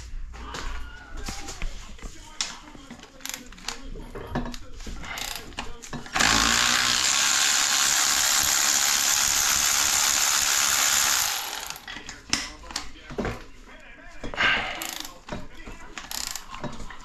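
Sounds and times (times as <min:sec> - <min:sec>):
tool clicks: 0:06.1 - 0:12.8
power tool running: 0:06.2 - 0:12.0.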